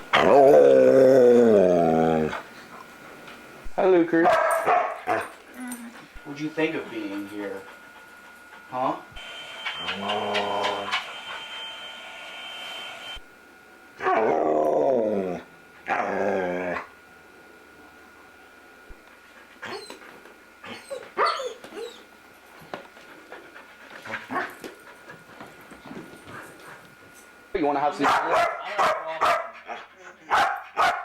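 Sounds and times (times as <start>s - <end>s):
dog howling: 0.1s - 2.4s, 9.8s - 11.0s, 14.0s - 16.9s.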